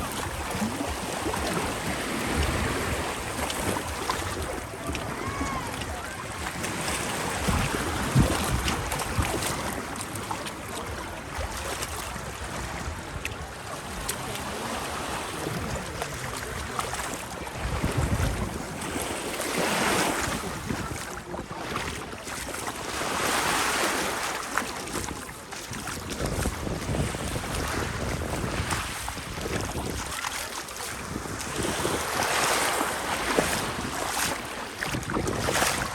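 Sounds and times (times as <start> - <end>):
small waves washing onto beach: 0.0 - 35.9
wind gusting on microphone: 17.6 - 18.9, 26.0 - 30.1.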